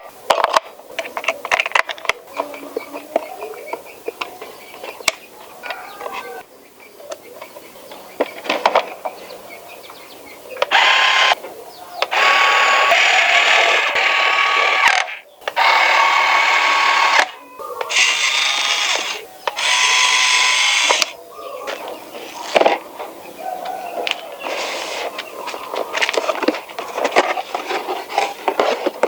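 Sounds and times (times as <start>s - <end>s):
electric screwdriver whirring: 10.6s - 11.4s, 12.1s - 21.2s
small parts clicking: 12.0s - 21.2s.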